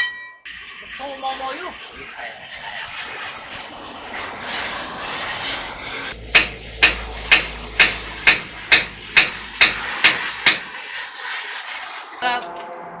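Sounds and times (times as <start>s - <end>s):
hammer striking metal: 0.0s - 0.5s, 6.2s - 10.8s.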